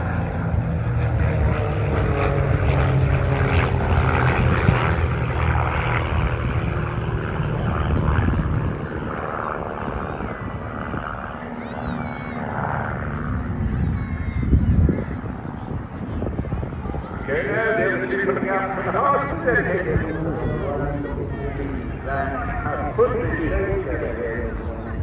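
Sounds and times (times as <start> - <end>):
propeller aircraft droning past: 0.0 - 25.0.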